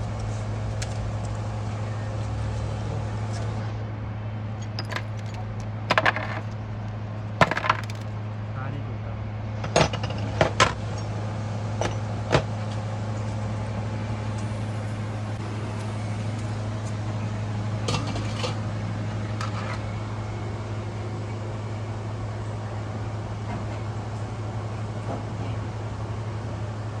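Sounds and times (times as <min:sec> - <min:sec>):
metal tools clinking: 0:04.6 - 0:06.5, 0:07.4 - 0:08.1.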